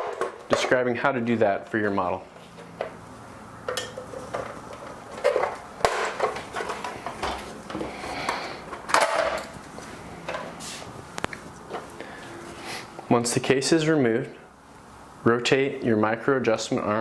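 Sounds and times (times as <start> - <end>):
plastic parts clicking and knocking: 0.0 - 0.8, 3.7 - 9.5.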